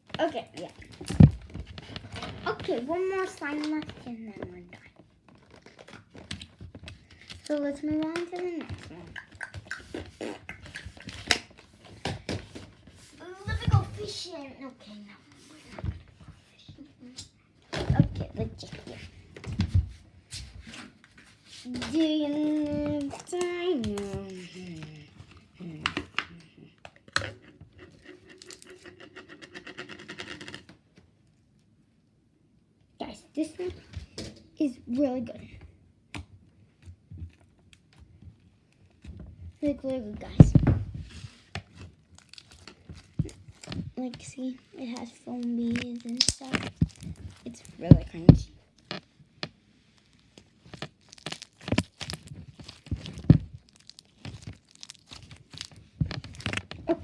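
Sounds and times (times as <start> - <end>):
slime crackling and popping: 42.0 - 43.8, 45.0 - 49.0, 49.9 - 57.0.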